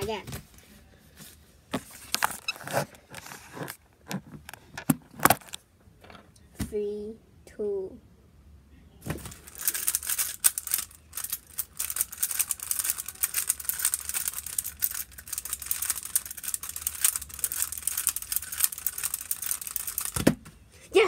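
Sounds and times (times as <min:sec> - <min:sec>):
puzzle cube clicking and rattling: 0:09.2 - 0:20.2.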